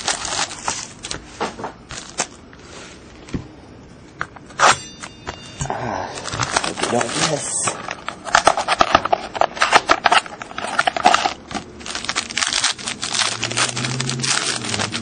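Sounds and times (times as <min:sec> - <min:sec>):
wrapper crinkling and tearing: 0:00.0 - 0:01.2, 0:01.9 - 0:02.4, 0:06.0 - 0:15.0.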